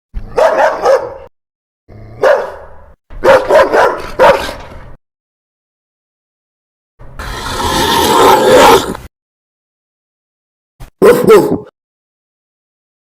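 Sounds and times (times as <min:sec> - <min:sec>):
dog barking: 0:00.3 - 0:01.3, 0:02.2 - 0:04.6, 0:11.0 - 0:11.7.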